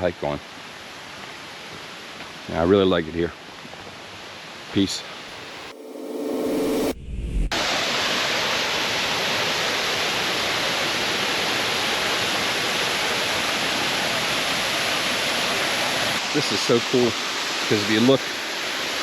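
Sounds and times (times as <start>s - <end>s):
low rumble: 5.7s - 7.8s
waterfall rushing: 7.6s - 19.0s.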